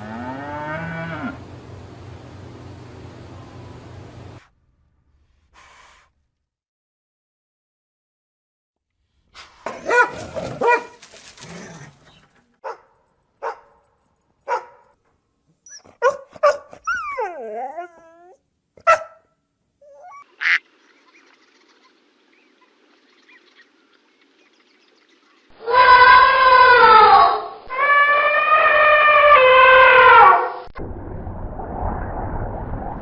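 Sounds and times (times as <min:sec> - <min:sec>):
dog barking: 0:09.7 - 0:11.0, 0:12.6 - 0:13.8, 0:14.4 - 0:15.0, 0:15.8 - 0:16.8, 0:18.8 - 0:19.3
dog whining: 0:15.6 - 0:19.0, 0:19.8 - 0:20.3.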